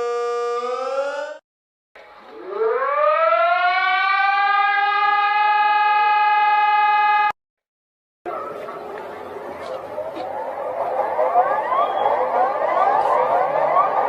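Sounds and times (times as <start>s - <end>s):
warning siren winding up: 0.0s - 1.4s, 2.3s - 7.4s.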